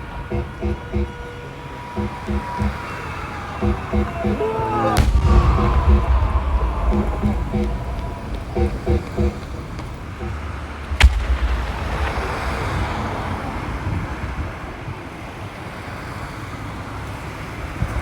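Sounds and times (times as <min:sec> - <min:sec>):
long crackling hiss: 0:05.0 - 0:13.8
firework shell boom: 0:10.9 - 0:13.9.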